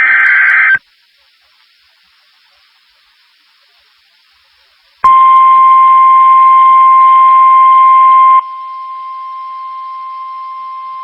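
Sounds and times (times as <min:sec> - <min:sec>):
faint radio hiss: 0:00.0 - 0:11.0
steady high alarm tone: 0:05.0 - 0:11.0.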